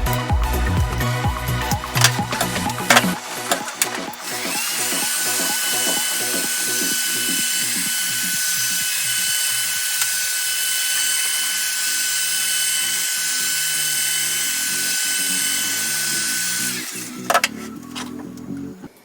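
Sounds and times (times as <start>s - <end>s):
sharp clicks: 0.0s - 6.5s
background music: 0.0s - 8.8s, 14.4s - 19.0s
small electric tool motor whining: 0.0s - 19.0s.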